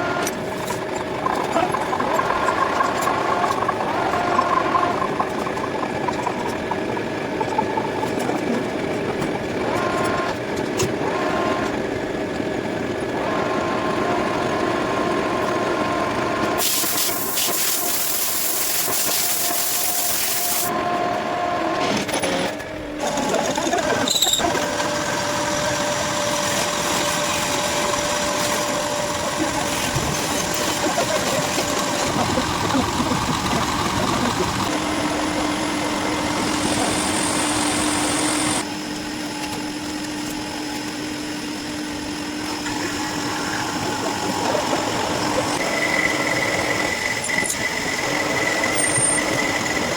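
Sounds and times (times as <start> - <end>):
machine tool running: 0.0 - 20.8, 21.8 - 49.9
loud hiss: 16.6 - 20.7.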